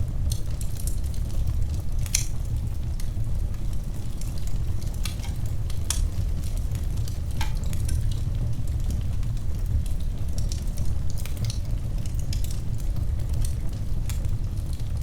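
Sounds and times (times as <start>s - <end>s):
fire crackling and rumbling: 0.0s - 15.0s
sharp pops from fire: 2.0s - 3.1s.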